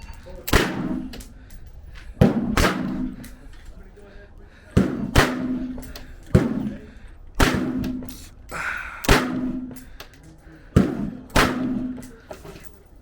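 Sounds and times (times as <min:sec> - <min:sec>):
gunshots: 0:00.4 - 0:01.3, 0:02.2 - 0:03.4, 0:04.8 - 0:06.8, 0:07.4 - 0:08.3, 0:09.0 - 0:09.8, 0:10.8 - 0:12.2.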